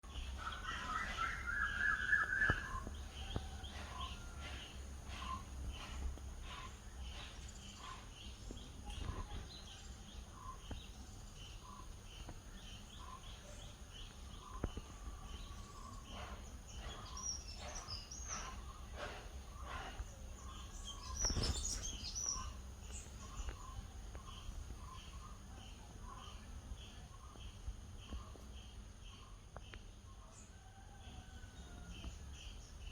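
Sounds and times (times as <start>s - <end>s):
high bird calls: 0.0s - 9.8s
birds chirping: 0.0s - 32.9s.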